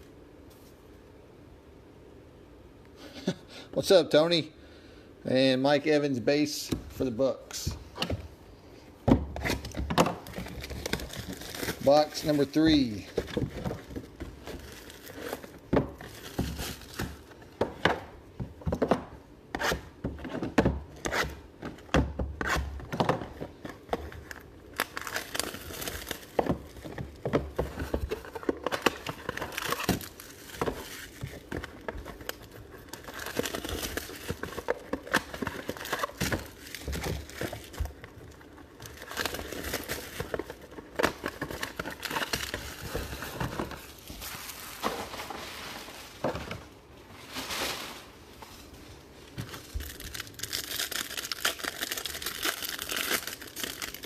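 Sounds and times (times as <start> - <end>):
plastic wrapping crinkling and tearing: 9.4 - 17.6, 22.4 - 46.3, 47.2 - 54.0.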